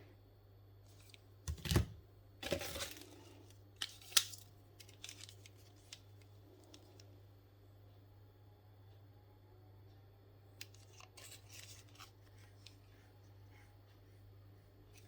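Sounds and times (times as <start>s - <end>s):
steady low hum: 0.0s - 15.0s
packaging tearing and rustling: 2.4s - 3.2s, 3.8s - 6.0s.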